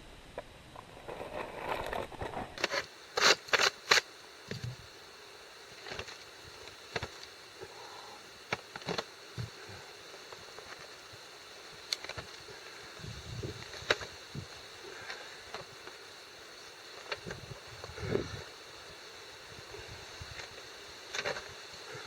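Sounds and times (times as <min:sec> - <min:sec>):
coals raked off metal tray: 0:00.8 - 0:04.6.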